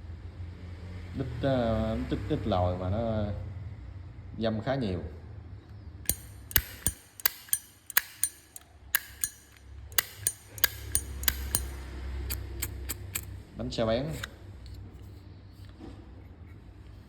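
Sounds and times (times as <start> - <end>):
lighter lid clicking open and shut: 6.1 - 13.3.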